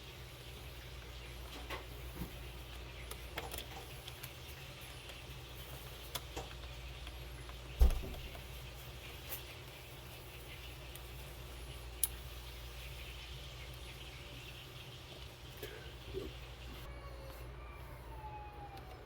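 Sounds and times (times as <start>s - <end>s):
small parts and tools clicking: 2.6s - 8.5s.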